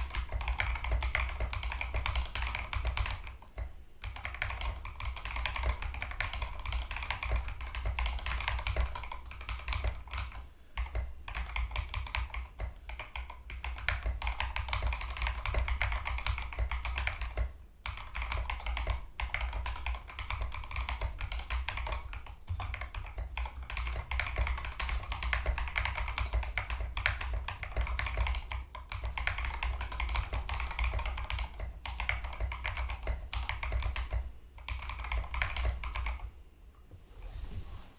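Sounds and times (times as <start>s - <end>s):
mechanical keyboard typing: 0.0s - 36.3s.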